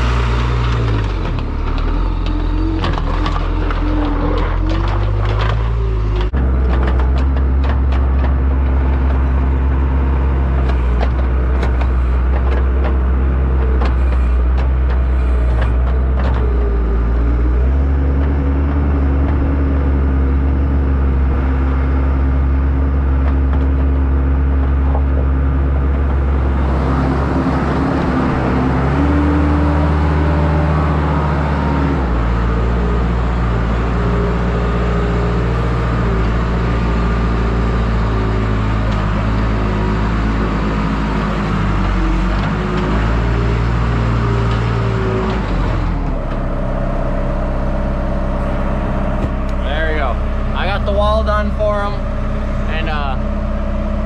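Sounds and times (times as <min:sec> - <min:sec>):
knocks and rattles: 0:00.0 - 0:21.5
loader engine running under load: 0:00.0 - 0:54.0.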